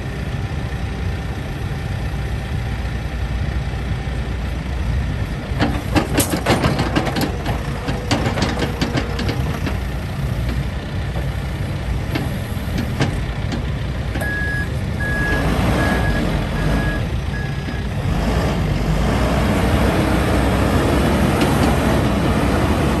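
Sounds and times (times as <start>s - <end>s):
diesel engine running: 0.0s - 23.0s
clanks and rattles: 5.4s - 15.5s
backup alarm beeping: 14.2s - 17.8s.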